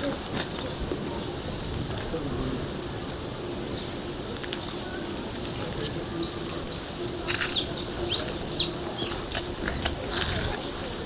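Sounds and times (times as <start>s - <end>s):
steady low hum: 0.0s - 11.0s
high-pitched chirping calls: 6.2s - 9.2s.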